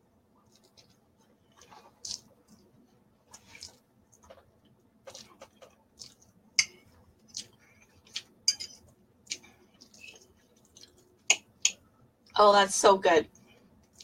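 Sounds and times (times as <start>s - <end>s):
wet chewing clicks and smacks: 0.5s - 2.3s, 3.4s - 8.4s, 9.2s - 11.8s.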